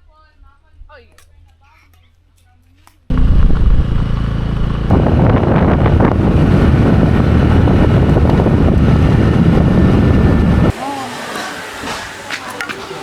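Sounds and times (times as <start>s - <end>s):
motor engine running: 3.1s - 10.7s
wind buffeting microphone: 3.1s - 10.8s.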